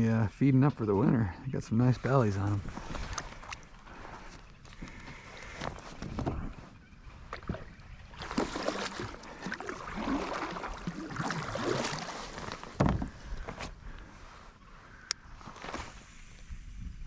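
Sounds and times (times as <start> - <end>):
water splashing against kayak: 7.2 - 13.7.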